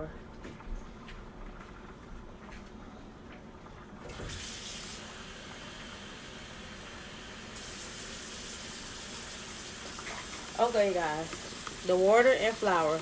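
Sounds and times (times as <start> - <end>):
faucet water running into bowl: 4.1 - 13.0.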